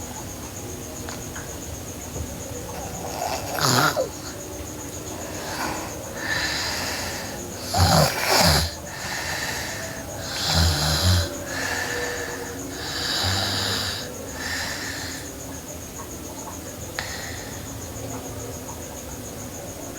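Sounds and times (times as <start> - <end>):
soft airy breathing: 2.5 - 15.6, 16.9 - 18.0
girl snoring: 2.7 - 4.4, 5.2 - 15.3.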